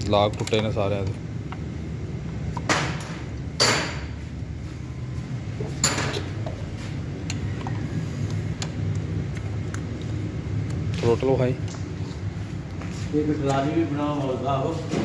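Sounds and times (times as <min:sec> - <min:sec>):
light clicks of parts: 0:00.0 - 0:01.6
steady low hum: 0:00.0 - 0:15.0
sharp knocks of hand tools: 0:02.6 - 0:04.1.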